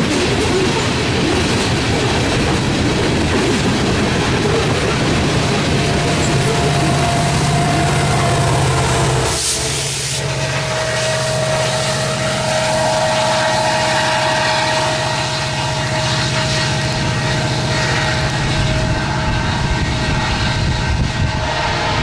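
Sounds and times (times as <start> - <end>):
train wheels rumbling on rail: 0.0 - 22.0
low hum: 2.2 - 22.0
steady ringing tone: 4.2 - 20.7.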